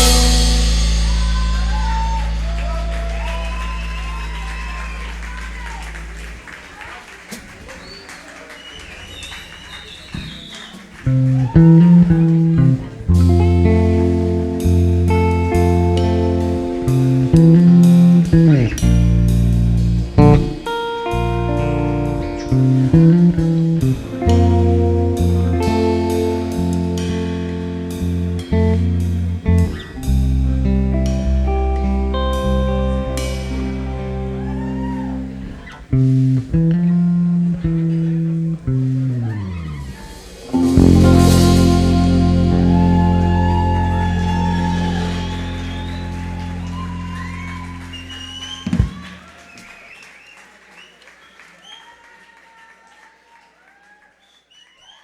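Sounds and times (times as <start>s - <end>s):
cymbal crash: 0.0s - 4.5s, 40.0s - 45.7s
electric guitar: 0.0s - 5.6s, 11.0s - 49.2s
drums playing: 0.0s - 6.2s, 40.0s - 49.2s
electric bass: 0.0s - 6.4s, 11.0s - 49.1s.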